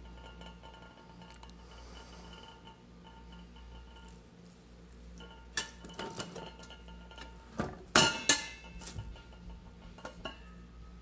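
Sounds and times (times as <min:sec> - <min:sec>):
faint steady whine: 0:00.0 - 0:11.0
metal clanking and clinking: 0:05.2 - 0:10.6.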